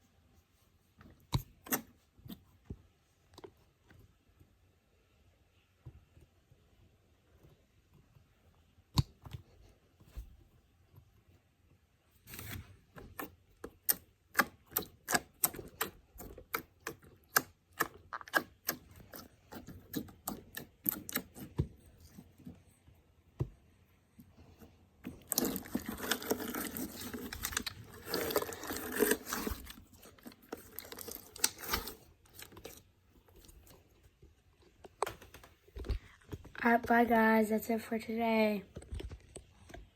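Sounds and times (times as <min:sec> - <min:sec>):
slime crackling squish: 0:12.4 - 0:21.6, 0:25.1 - 0:32.8.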